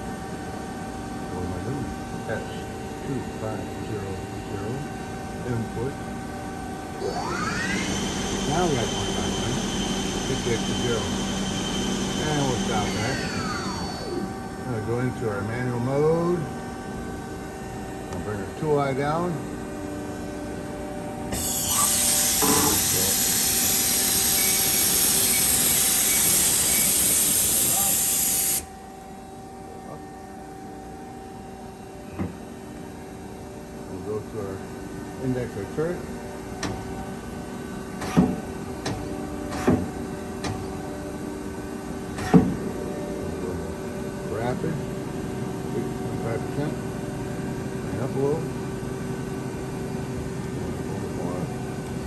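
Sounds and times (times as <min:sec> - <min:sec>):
lathe loud steady hiss: 0:07.0 - 0:16.4, 0:21.2 - 0:28.8.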